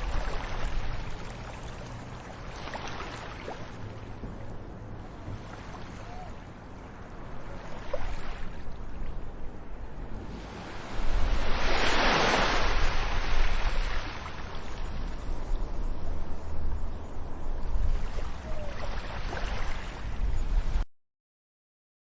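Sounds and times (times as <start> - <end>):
ocean surf washing: 0.0 - 16.2
wave breaking: 10.1 - 15.3.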